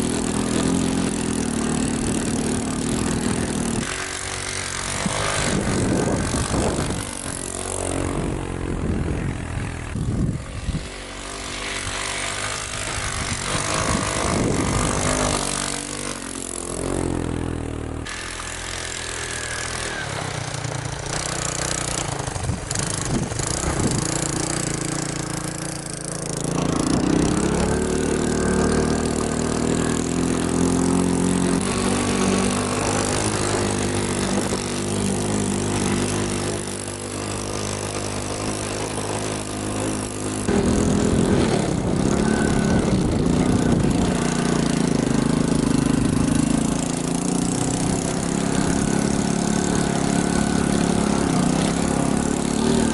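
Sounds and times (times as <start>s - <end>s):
small motorcycle engine running: 0.0s - 52.9s.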